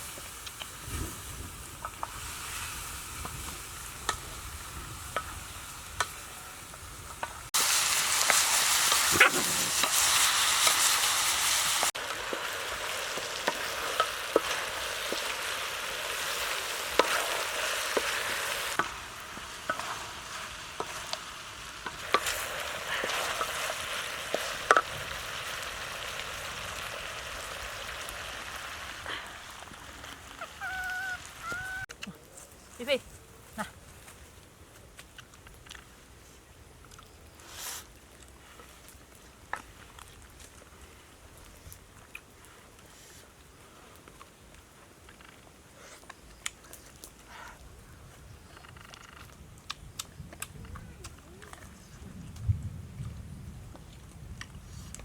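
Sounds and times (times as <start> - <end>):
food sizzling in a pan: 0.0 - 31.9.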